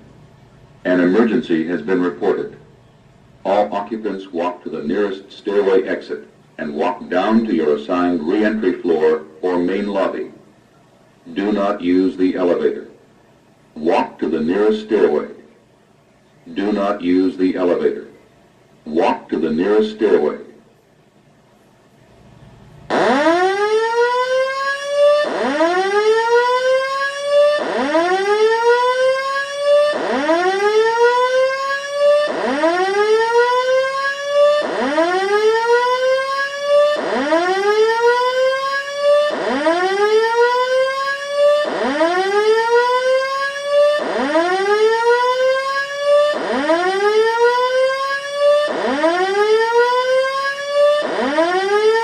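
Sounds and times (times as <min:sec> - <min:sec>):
fire alarm whoop tone: 0:22.9 - 0:52.0.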